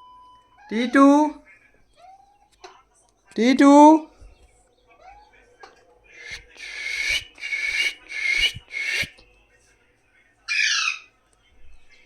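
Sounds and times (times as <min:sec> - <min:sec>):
parrot squawking: 0:06.2 - 0:09.1.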